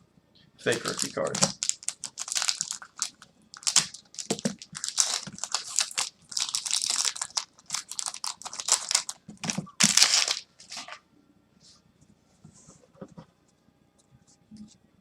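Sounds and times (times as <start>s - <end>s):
foil wrapper crinkling and tearing: 0.7s - 11.0s.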